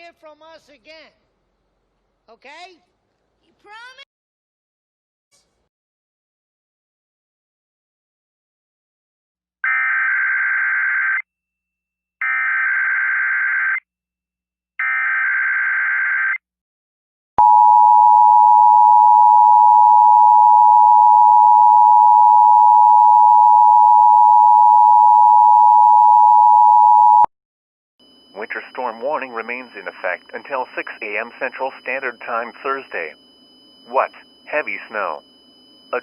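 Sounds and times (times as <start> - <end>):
data bursts: 28.3 - 35.2.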